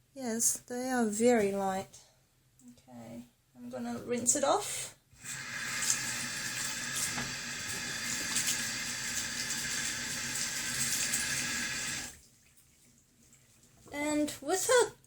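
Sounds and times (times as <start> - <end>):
running water splashing on skin: 5.2 - 13.7.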